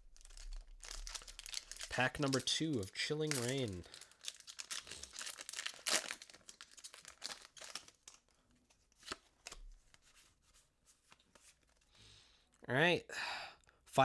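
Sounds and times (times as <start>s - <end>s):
foil wrapper tearing and crinkling: 0.1s - 8.4s.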